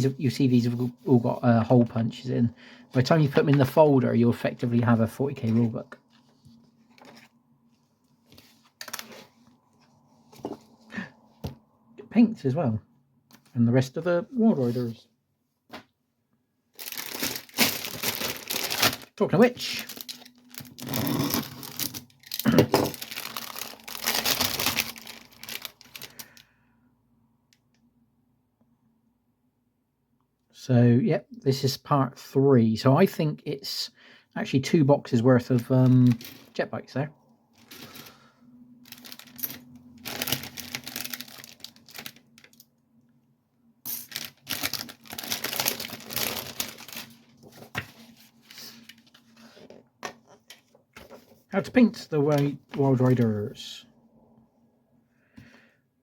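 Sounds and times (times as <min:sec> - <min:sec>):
magazine pages rustling: 0:04.7 - 0:10.8, 0:16.8 - 0:26.4, 0:35.4 - 0:36.6, 0:37.5 - 0:42.6, 0:44.1 - 0:53.7
packaging crinkling and tearing: 0:08.3 - 0:09.5, 0:16.8 - 0:26.4, 0:35.6 - 0:36.6, 0:37.6 - 0:42.7, 0:44.0 - 0:49.7.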